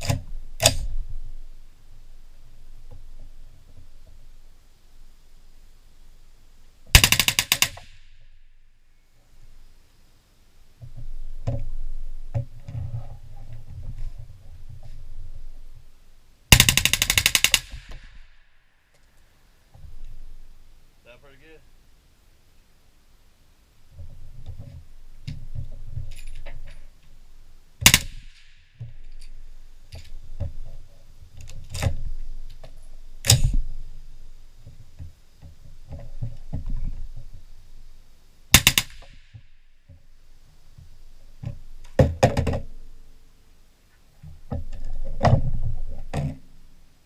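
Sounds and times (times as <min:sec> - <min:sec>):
suppressed rifle shots: 0:00.0 - 0:00.9, 0:06.9 - 0:08.4, 0:16.5 - 0:18.4, 0:27.8 - 0:29.0, 0:33.2 - 0:33.7, 0:38.5 - 0:39.4.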